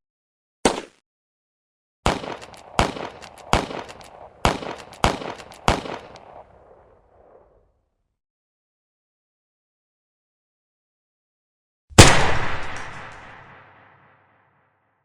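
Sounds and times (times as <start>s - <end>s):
gunshots with echo: 2.0s - 7.5s, 11.9s - 14.3s.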